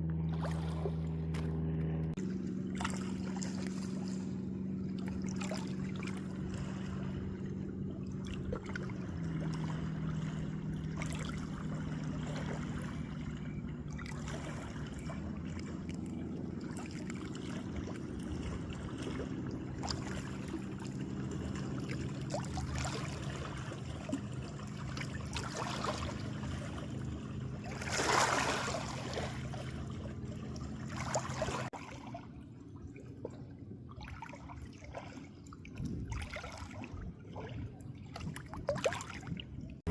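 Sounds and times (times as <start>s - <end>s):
steady low hum: 0.0s - 39.9s
water trickling and splashing: 0.0s - 39.9s
loud water splash: 2.2s - 13.3s, 16.6s - 32.2s.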